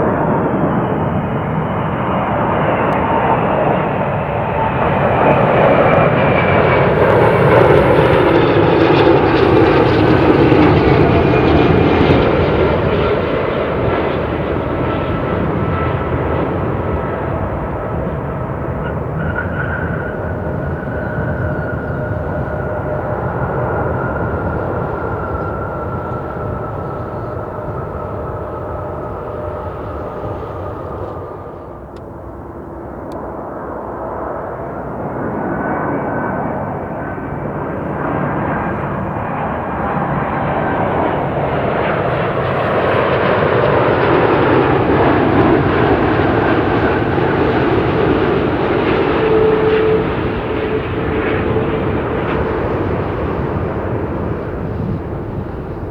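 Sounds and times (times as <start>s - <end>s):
jet engines whining: 4.6s - 13.4s, 40.1s - 53.7s.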